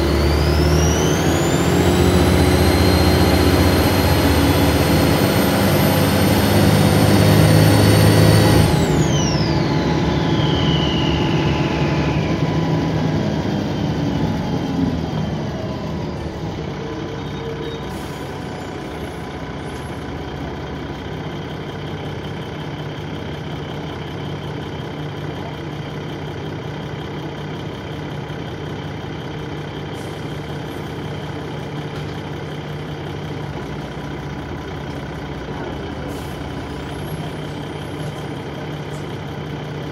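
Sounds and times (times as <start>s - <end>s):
high turbo whine: 0.0s - 20.3s
bus engine: 0.0s - 39.9s.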